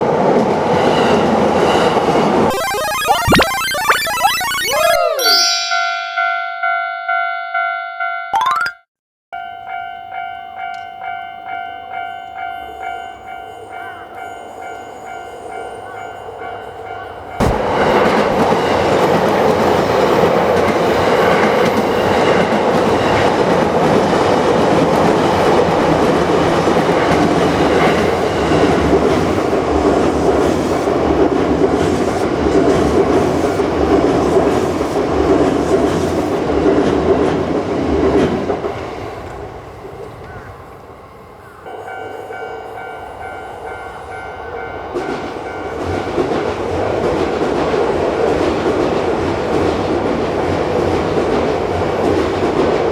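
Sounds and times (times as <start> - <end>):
another train approaching: 9.5 - 52.9
train wheels clattering on rails: 44.9 - 52.9.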